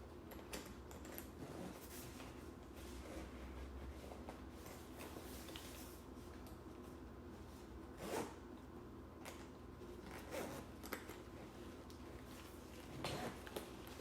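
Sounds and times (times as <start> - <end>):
zipper pulled open: 1.4 - 2.0, 8.0 - 8.4, 10.0 - 10.7, 12.9 - 13.5.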